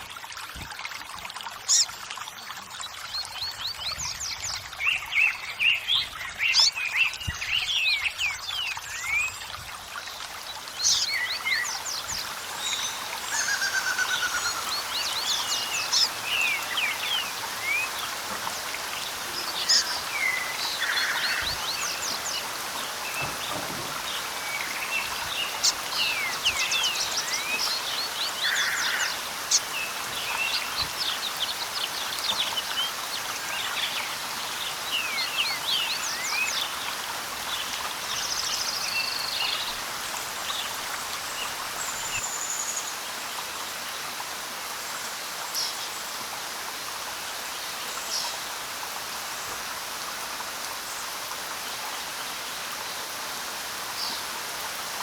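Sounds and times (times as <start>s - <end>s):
birds singing: 10.0s - 43.9s
water hissing: 10.4s - 37.4s.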